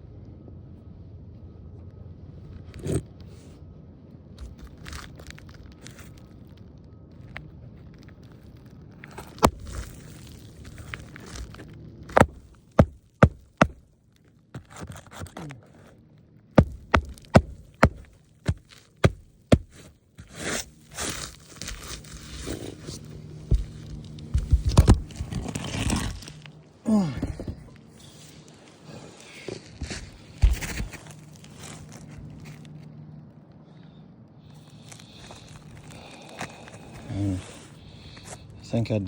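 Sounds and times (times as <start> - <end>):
shingle scraping and crunching: 4.4 - 6.5, 7.2 - 33.0, 34.5 - 38.5
tool knocking on shingle: 12.1 - 13.8, 16.6 - 19.9.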